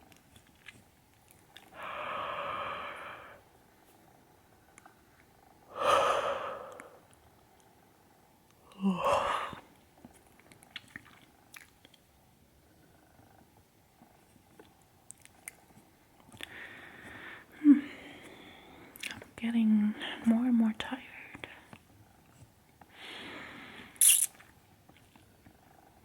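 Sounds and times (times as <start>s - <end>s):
woman yawning: 8.8s - 9.6s
faint mouth clicks: 24.0s - 24.5s.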